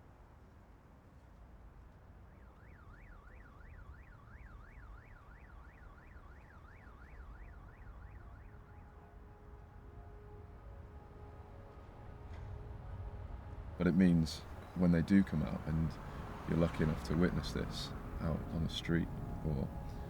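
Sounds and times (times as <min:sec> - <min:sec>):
low city rumble: 0:00.0 - 0:20.0
faint siren yelping: 0:02.4 - 0:11.9, 0:13.8 - 0:20.0.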